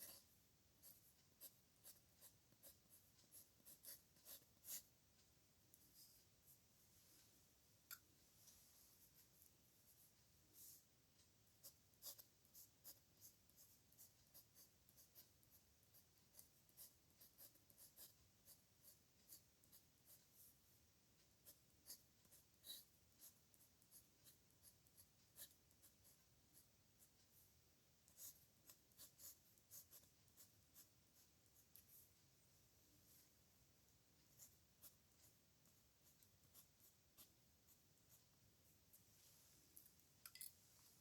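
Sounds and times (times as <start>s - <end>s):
pen scratching on paper: 0.0s - 4.9s, 11.6s - 20.6s, 21.4s - 27.2s, 28.0s - 32.1s, 34.4s - 38.3s.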